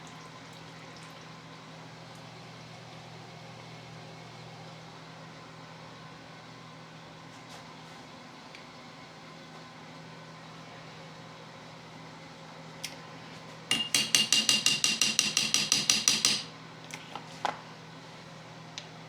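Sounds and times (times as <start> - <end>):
hammer tapping on metal: 13.7 - 16.5.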